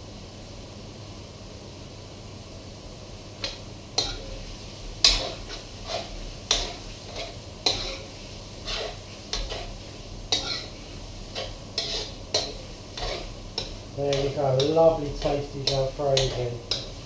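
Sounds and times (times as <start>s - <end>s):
utensil scraping a pan: 3.4s - 4.4s, 5.0s - 17.0s.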